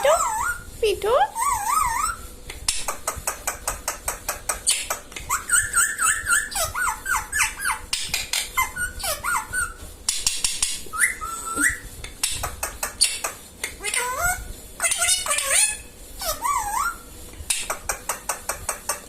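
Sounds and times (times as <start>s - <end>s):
parrot warbling calls: 0.0s - 2.3s, 5.3s - 9.8s, 13.8s - 17.0s.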